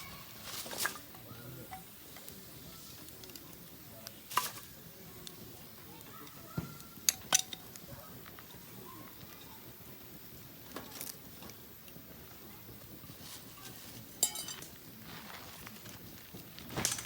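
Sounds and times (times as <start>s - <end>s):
campfire wood crackling: 0.0s - 17.0s
sharp fire pops: 0.4s - 8.5s, 9.3s - 17.0s.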